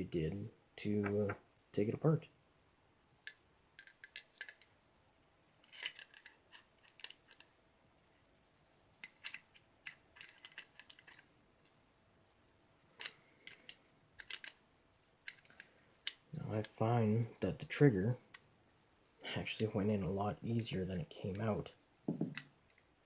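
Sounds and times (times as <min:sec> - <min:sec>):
metallic clicks of pistol parts: 0:03.2 - 0:04.7, 0:05.6 - 0:07.6, 0:09.0 - 0:11.8, 0:12.9 - 0:16.8.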